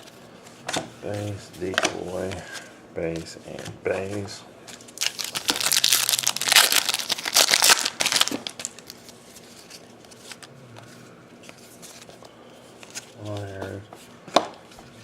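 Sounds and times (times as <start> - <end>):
wrapper crinkling: 4.9 - 10.4.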